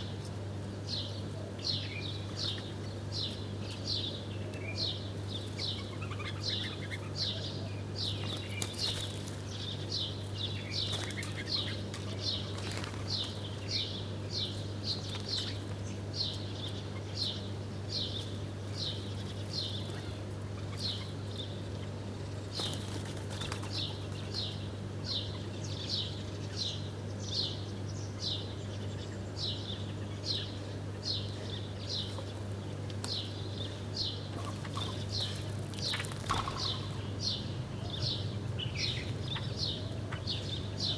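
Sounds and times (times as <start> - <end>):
small bird chirping: 33.1 - 40.9.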